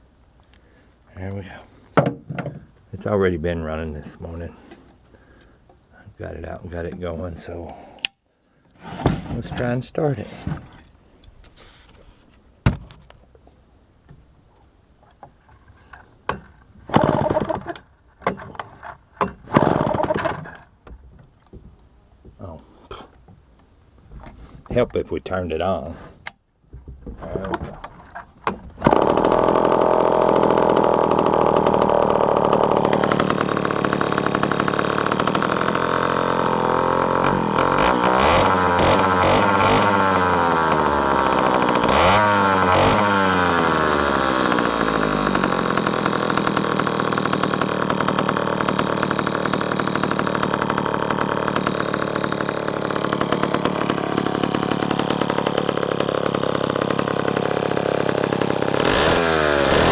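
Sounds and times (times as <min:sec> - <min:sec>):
chainsaw engine revving: 0:16.9 - 0:17.8, 0:19.5 - 0:20.5, 0:28.8 - 0:59.9.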